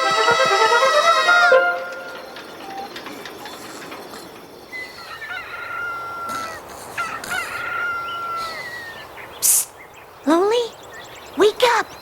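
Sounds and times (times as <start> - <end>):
rooster crowing: 4.7 - 9.0.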